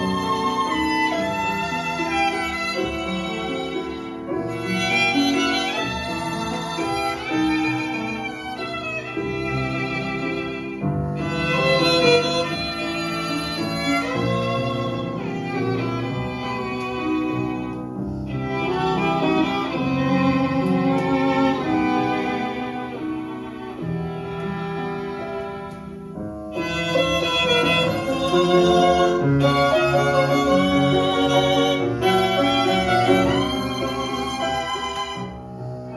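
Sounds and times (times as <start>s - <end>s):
classical violin and strings music: 0.0s - 35.9s.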